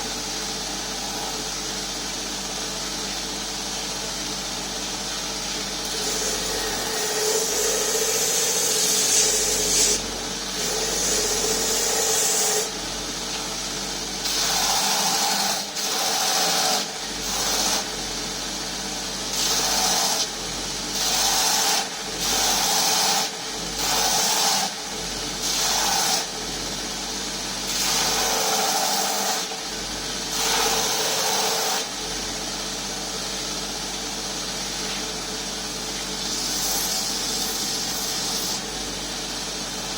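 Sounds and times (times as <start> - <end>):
grinding machine motor hum: 0.0 - 22.8
grinding hiss: 5.8 - 12.8.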